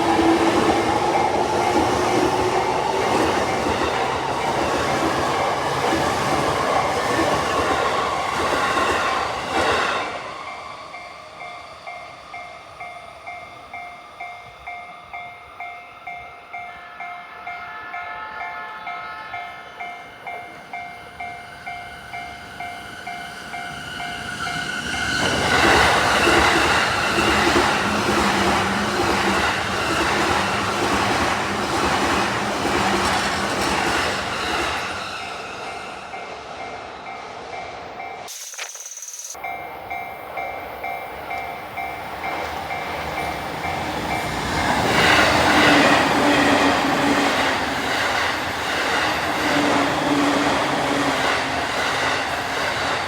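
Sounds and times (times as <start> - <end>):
level-crossing bell clanging: 10.3 - 31.0, 39.0 - 53.0.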